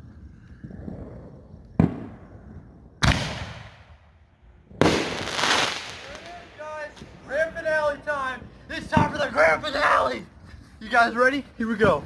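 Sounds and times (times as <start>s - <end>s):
fireworks bangs with hiss: 1.7s - 2.3s, 3.0s - 7.5s, 8.4s - 9.6s.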